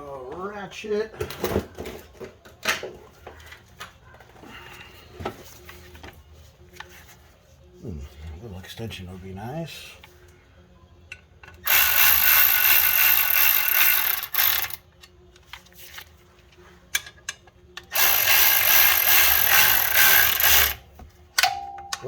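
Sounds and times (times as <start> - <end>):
ratchet wrench clicking: 11.4 - 14.8, 17.8 - 20.8.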